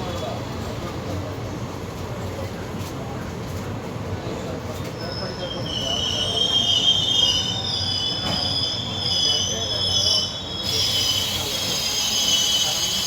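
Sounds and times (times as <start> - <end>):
train wheels squealing on rails: 0.0 - 2.7, 4.0 - 13.0
rumble of moving train: 0.0 - 13.0.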